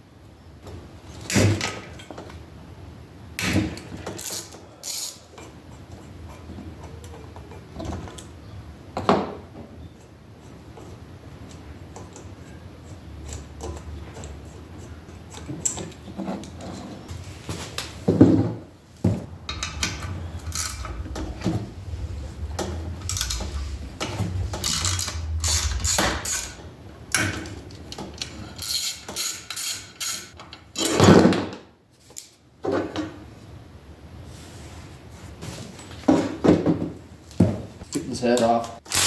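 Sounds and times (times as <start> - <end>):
hand tools clicking on metal: 27.2 - 30.4.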